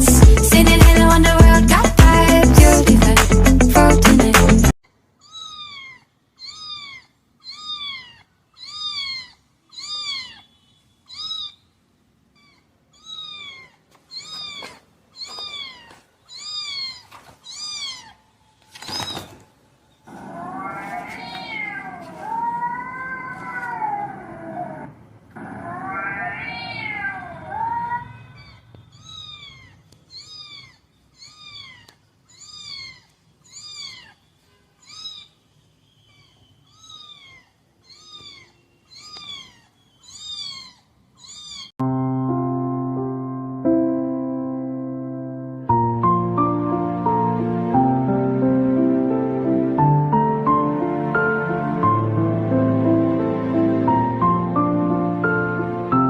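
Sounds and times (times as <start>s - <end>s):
cat meowing: 5.2s - 11.7s, 12.3s - 19.5s, 20.1s - 35.4s, 36.0s - 41.8s.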